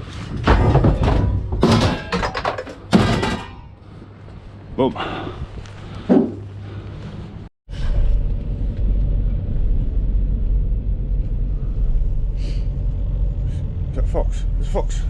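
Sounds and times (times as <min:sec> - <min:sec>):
van engine rumbling while driving: 0:07.7 - 0:15.0.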